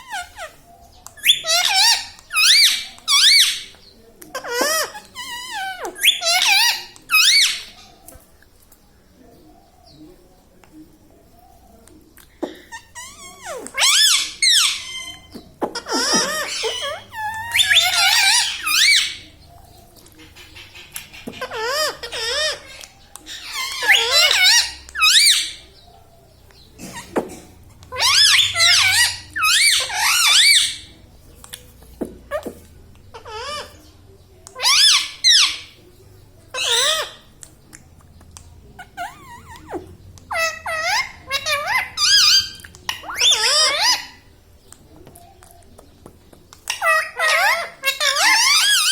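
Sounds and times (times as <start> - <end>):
parrot squeaky calls: 0.0 - 8.0, 12.4 - 19.4, 20.2 - 25.8, 27.7 - 31.6, 32.3 - 33.9, 34.5 - 35.8, 36.5 - 37.4, 38.7 - 44.3, 46.6 - 48.9.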